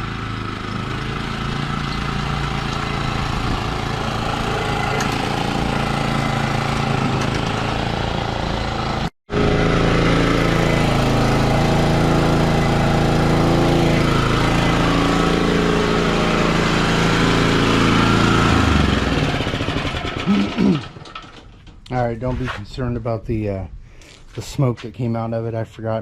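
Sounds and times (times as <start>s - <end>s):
lawn mower engine running: 0.0s - 21.9s.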